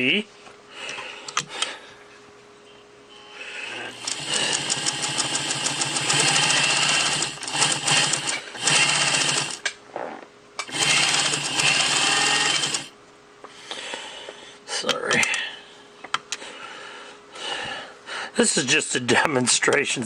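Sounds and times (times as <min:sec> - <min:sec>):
sewing machine stitching: 0:03.9 - 0:09.6, 0:10.6 - 0:12.9.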